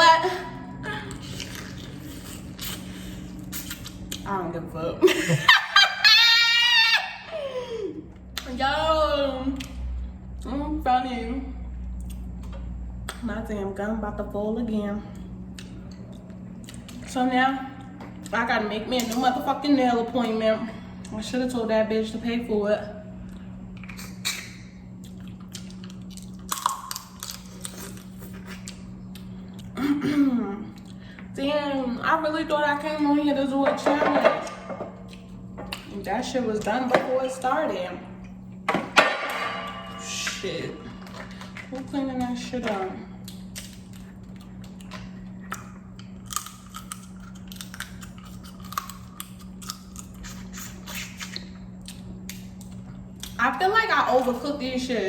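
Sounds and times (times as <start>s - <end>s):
low electrical hum: 0.0s - 55.0s
wet chewing: 1.3s - 4.3s, 23.2s - 29.8s, 43.2s - 53.4s.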